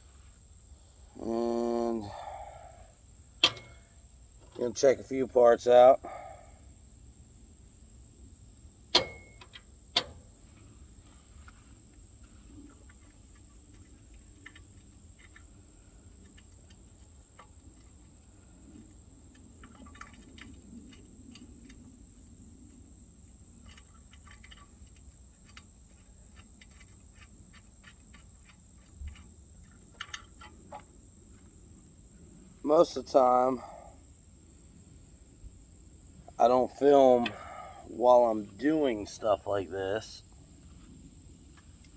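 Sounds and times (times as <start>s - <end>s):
sharp metallic click: 3.4s - 3.8s, 8.9s - 10.2s.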